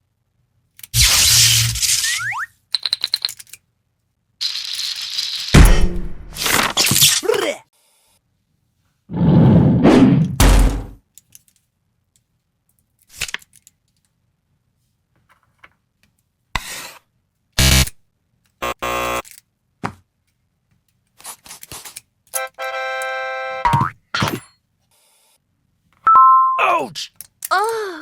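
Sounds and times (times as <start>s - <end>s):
buzzer tones: 18.6s - 19.2s, 22.4s - 23.9s.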